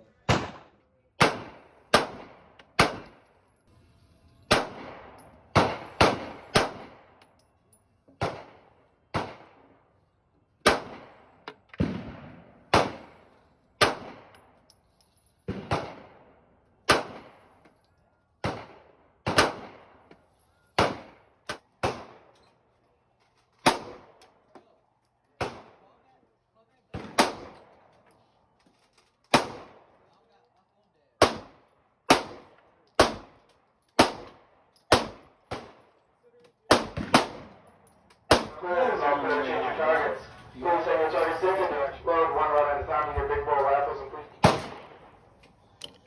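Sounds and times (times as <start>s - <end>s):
echoing gunshots indoors: 4.5s - 7.2s, 10.6s - 13.1s, 13.8s - 14.4s, 44.4s - 45.2s.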